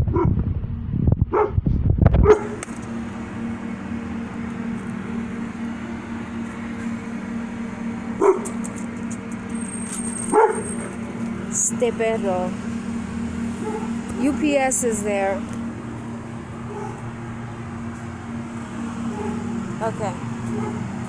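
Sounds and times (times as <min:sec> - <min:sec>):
steady low hum: 0:00.0 - 0:21.0
dog barking: 0:01.3 - 0:01.6, 0:02.2 - 0:02.6, 0:08.2 - 0:08.6, 0:10.2 - 0:10.9, 0:13.6 - 0:14.0, 0:16.7 - 0:17.1, 0:19.1 - 0:19.6, 0:20.5 - 0:20.9.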